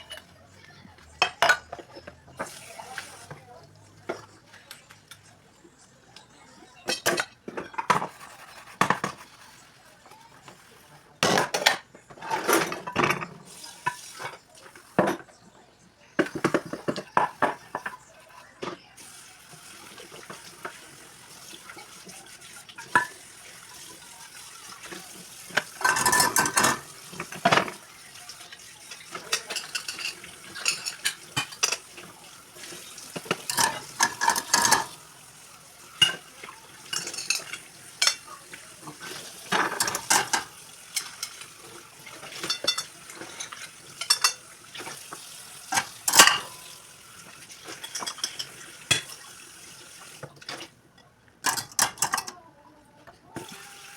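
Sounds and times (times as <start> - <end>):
utensils clinking against pots: 0.0 - 0.4, 1.1 - 5.4, 6.8 - 9.6, 10.2 - 15.4, 16.2 - 18.8, 21.6 - 24.0, 24.6 - 35.2, 35.8 - 49.3, 50.2 - 52.4
food sizzling in a pan: 19.0 - 50.3, 53.4 - 53.9.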